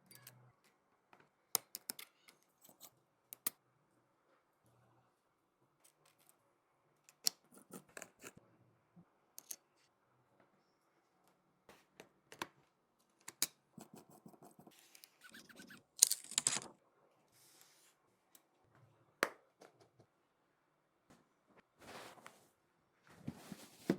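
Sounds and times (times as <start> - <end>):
small tools clicking and tapping: 1.6 - 2.8.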